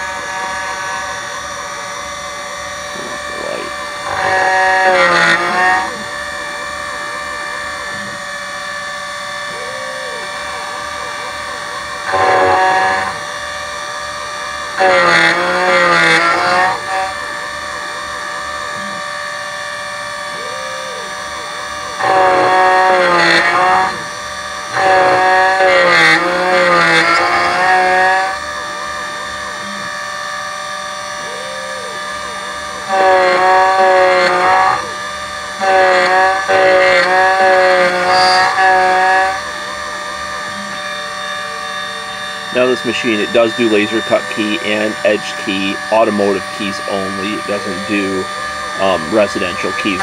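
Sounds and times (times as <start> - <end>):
key cutting machine motor whine: 0.0 - 50.0.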